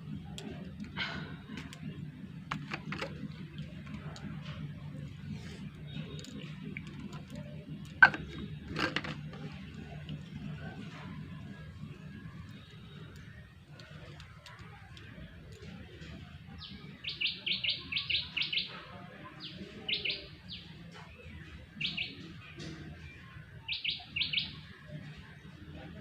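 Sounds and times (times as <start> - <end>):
steady low hum: 0.0 - 17.0.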